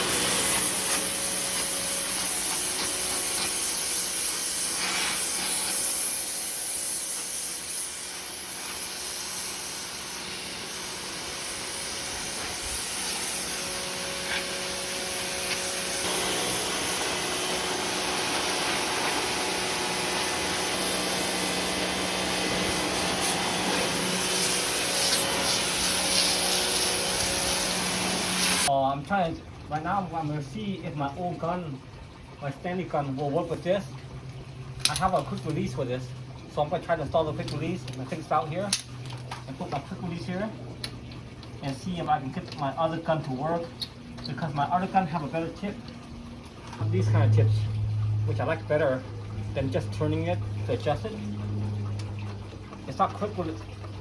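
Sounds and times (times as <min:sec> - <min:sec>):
pressure washer motor hum: 0:00.0 - 0:28.7, 0:33.6 - 0:54.0
water jet spraying hiss: 0:00.0 - 0:28.7.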